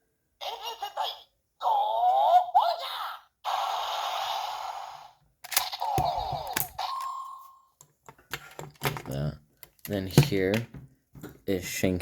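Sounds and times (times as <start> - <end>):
plastic handling clicks: 5.4 - 6.8, 7.8 - 11.4.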